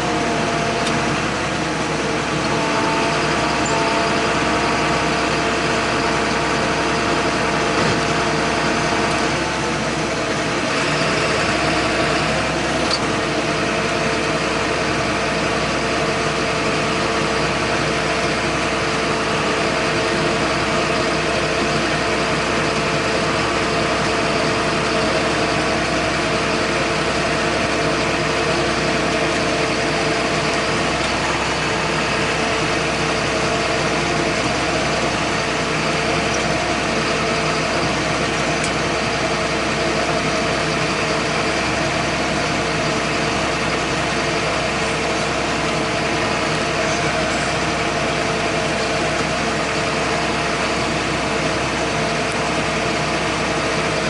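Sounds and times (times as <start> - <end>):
tractor diesel engine droning: 0.0 - 54.0.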